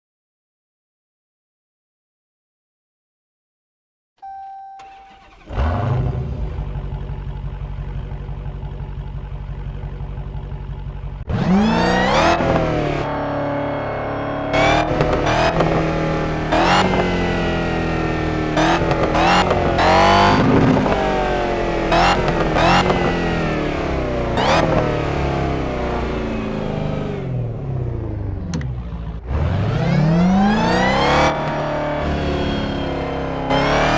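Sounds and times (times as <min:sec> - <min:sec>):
brief tone: 0:04.2 - 0:05.2
car engine starting and idling: 0:04.2 - 0:33.9
car engine revving: 0:04.8 - 0:33.9.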